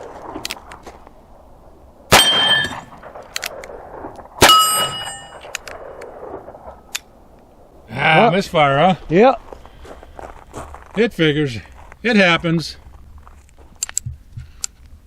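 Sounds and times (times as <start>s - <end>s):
sharp metallic clangs: 2.1s - 3.0s, 4.4s - 5.6s.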